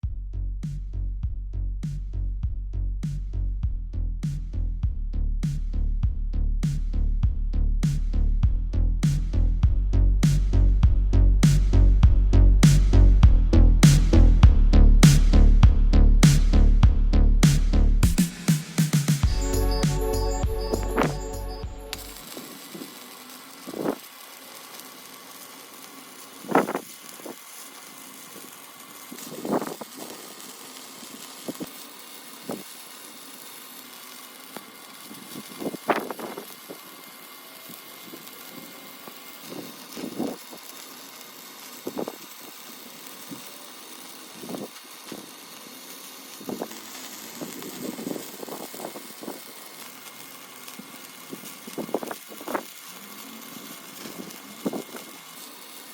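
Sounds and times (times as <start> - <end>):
welding pops and crackles: 0.6 - 1.0, 1.8 - 2.2, 3.0 - 3.4, 4.2 - 5.8, 6.6 - 55.9
welding arc hissing: 1.8 - 2.4, 3.0 - 3.6, 4.2 - 4.8, 5.4 - 55.9.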